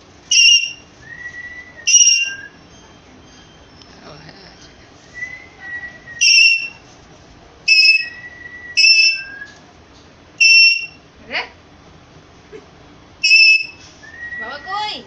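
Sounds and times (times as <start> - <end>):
parakeet sweeping call: 0.3 - 0.8, 6.2 - 6.8, 13.2 - 13.8
parakeet whistling: 0.3 - 3.8, 4.6 - 6.8, 7.7 - 9.6, 10.4 - 11.0, 13.2 - 15.0.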